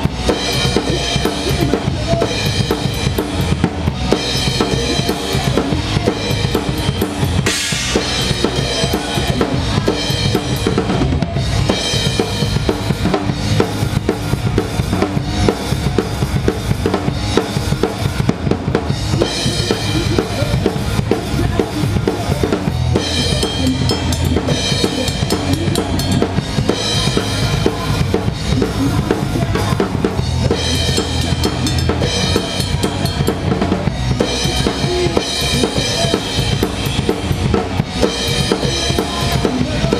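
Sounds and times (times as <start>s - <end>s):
drum kit beat: 0.0s - 39.9s
rock band playing live: 0.0s - 39.9s.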